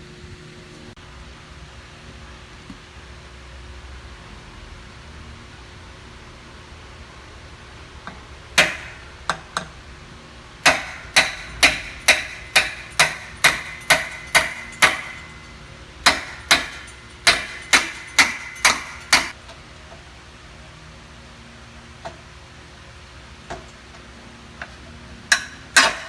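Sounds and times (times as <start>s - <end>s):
hammer blows on metal: 10.6s - 19.3s.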